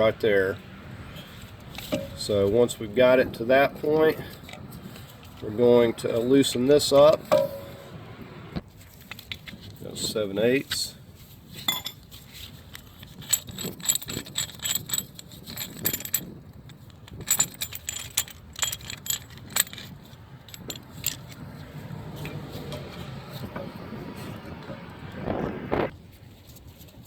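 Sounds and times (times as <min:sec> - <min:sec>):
metal hand tools clinking: 0:01.2 - 0:02.8, 0:11.6 - 0:23.4.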